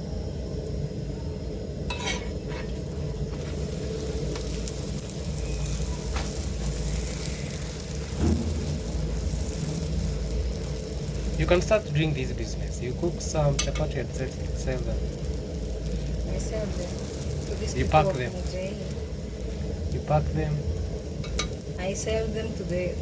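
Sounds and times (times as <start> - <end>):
flatbread sizzling in oil: 1.9 - 23.0.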